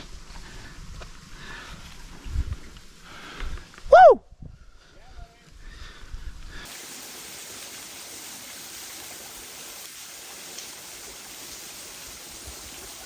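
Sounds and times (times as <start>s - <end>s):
waterfall rushing: 6.7s - 13.0s.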